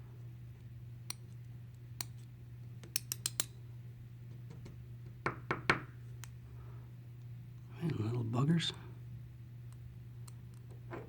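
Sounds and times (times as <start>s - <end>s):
sharp metal clicks of padlock pins: 2.8s - 3.6s.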